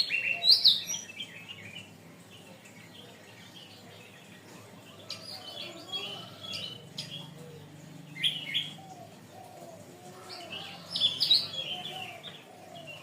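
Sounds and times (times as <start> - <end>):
canary singing: 0.0 - 13.0.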